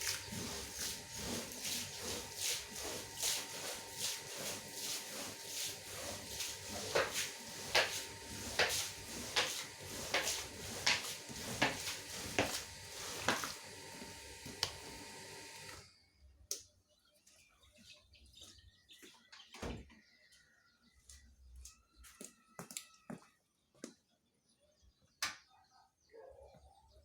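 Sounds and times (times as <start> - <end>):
floor polisher scrubbing carpet: 0.0 - 15.8.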